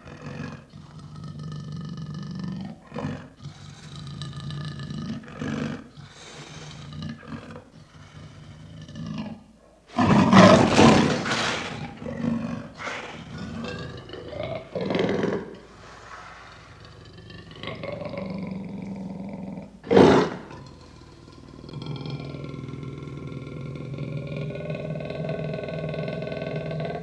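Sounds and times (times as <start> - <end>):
panther growling: 0.0 - 27.0
panther roar: 9.9 - 27.0.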